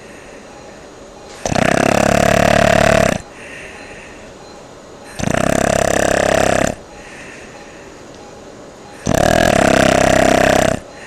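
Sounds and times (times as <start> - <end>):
quiet breath: 0.0 - 0.9, 3.2 - 4.4, 6.9 - 8.1, 10.8 - 11.0
person snoring: 1.4 - 3.3, 5.1 - 6.8, 9.0 - 11.0.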